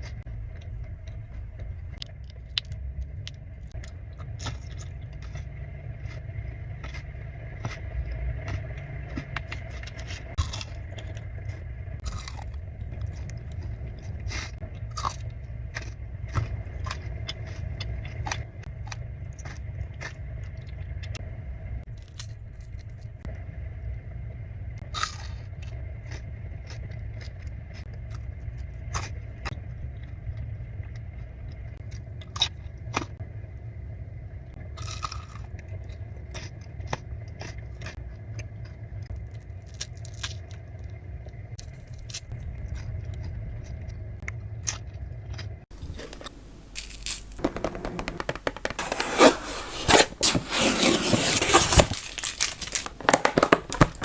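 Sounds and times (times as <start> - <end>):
chewing chocolates: 0.0 - 21.2, 24.9 - 33.2, 34.8 - 48.9, 49.6 - 54.0
low steady hum: 0.0 - 26.6, 45.7 - 54.0
crisp crunches: 45.7 - 54.0
foil wrapper crinkling: 45.8 - 54.0.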